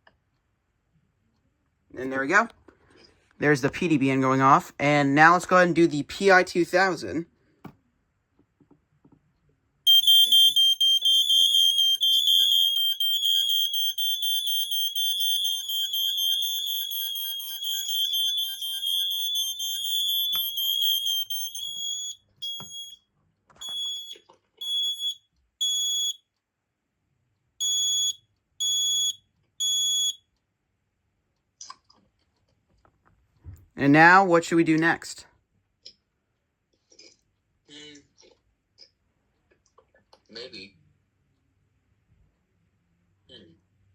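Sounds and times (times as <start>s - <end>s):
high-pitched smoke alarm tones: 9.9s - 26.3s, 27.6s - 30.3s
smoke alarm beeps: 9.9s - 26.3s, 27.6s - 30.3s.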